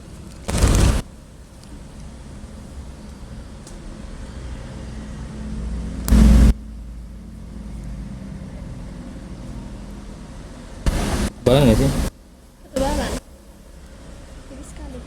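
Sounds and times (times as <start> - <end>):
loud burst of noise: 0.5 - 1.1, 6.1 - 6.7, 10.8 - 12.1
low background rumble: 6.1 - 12.0.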